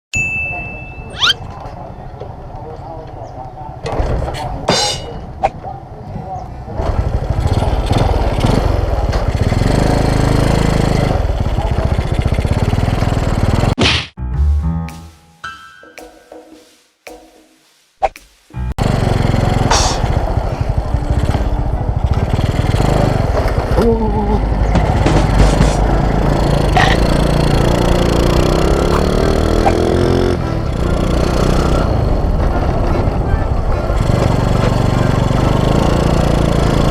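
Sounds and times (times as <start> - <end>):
motorcycle engine revving: 6.7 - 13.8, 18.8 - 36.9
music: 14.2 - 22.1, 28.9 - 35.9.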